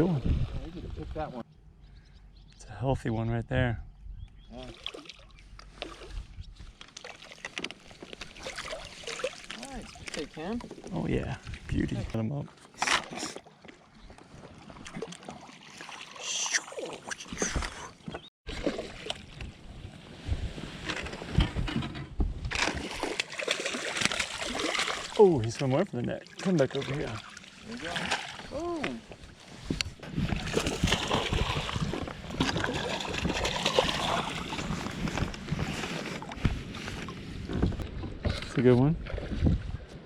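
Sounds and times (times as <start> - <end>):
wind rumble on microphone: 0.0 - 1.4, 3.5 - 4.5, 6.1 - 6.8, 19.4 - 22.6, 29.5 - 40.0
water splashing and sloshing: 4.5 - 40.0
fish splash: 8.4 - 10.0, 18.5 - 19.4, 22.6 - 25.2, 30.4 - 34.7.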